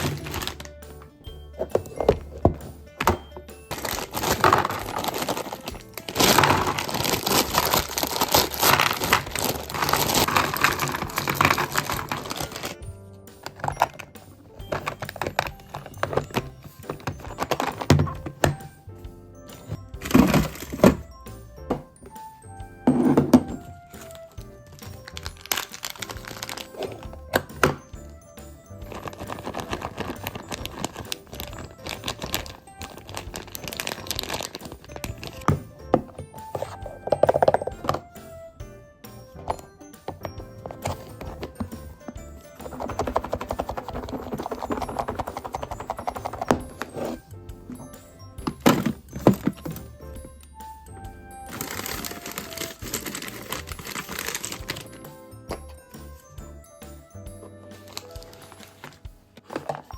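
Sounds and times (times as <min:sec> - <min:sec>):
plastic packaging crinkling: 0:00.0 - 0:00.7, 0:01.6 - 0:12.8, 0:13.4 - 0:18.6, 0:19.7 - 0:21.1, 0:23.0 - 0:27.9, 0:28.8 - 0:38.1, 0:40.2 - 0:50.0, 0:51.4 - 0:55.7, 0:57.8 - 0:59.9
plastic containers clicking: 0:00.0 - 0:18.8, 0:19.5 - 0:27.9, 0:28.8 - 0:38.3, 0:39.4 - 0:50.2, 0:51.4 - 0:55.9, 0:57.4 - 0:59.9
plastic containers knocking: 0:00.0 - 0:38.5, 0:39.3 - 0:50.4, 0:51.2 - 0:56.1, 0:57.3 - 0:59.9
background music: 0:00.0 - 0:59.9.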